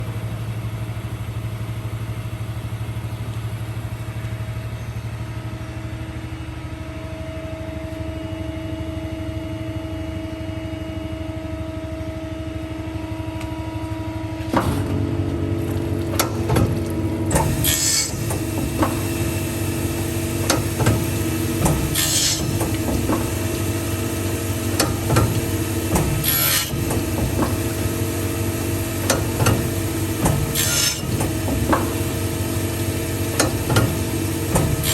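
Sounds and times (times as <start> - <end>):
grinding machine motor hum: 0.0 - 34.9
machine clicks and knocks: 15.6 - 19.4, 20.0 - 28.0, 29.0 - 32.3, 33.3 - 34.9.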